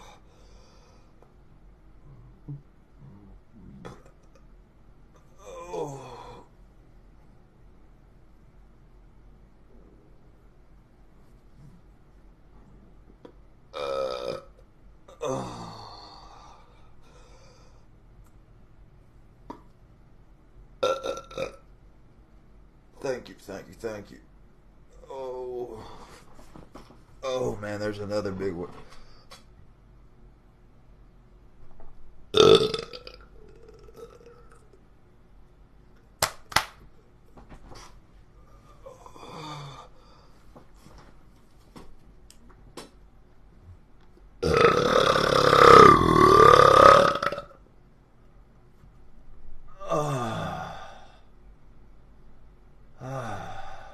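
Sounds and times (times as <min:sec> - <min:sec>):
man belching: 0:13.8 - 0:16.0, 0:20.8 - 0:21.6, 0:32.4 - 0:34.6, 0:44.4 - 0:47.6.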